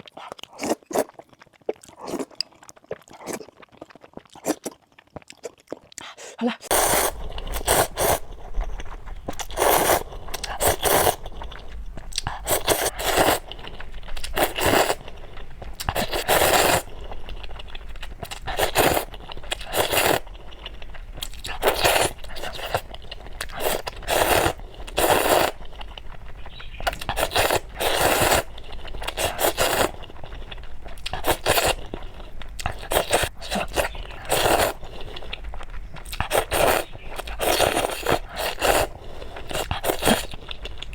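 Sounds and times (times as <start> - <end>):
crunchy bites and chewing: 0.0 - 40.9.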